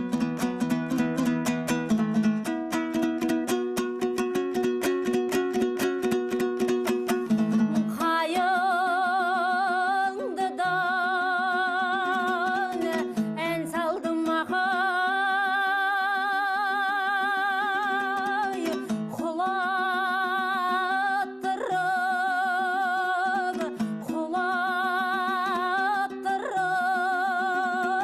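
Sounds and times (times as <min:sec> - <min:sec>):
plucked string accompaniment: 0:00.0 - 0:28.0
person singing with vibrato: 0:07.7 - 0:28.0.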